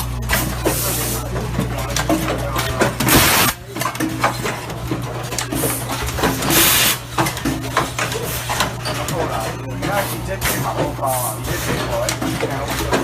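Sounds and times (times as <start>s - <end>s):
machine motor hum: 0.0s - 13.0s
air hissing bursts: 3.1s - 3.6s, 6.5s - 7.0s.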